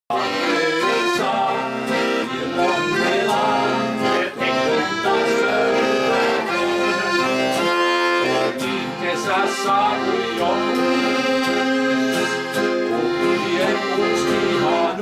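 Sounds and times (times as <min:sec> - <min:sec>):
accordion playing a melody: 0:00.1 - 0:15.0.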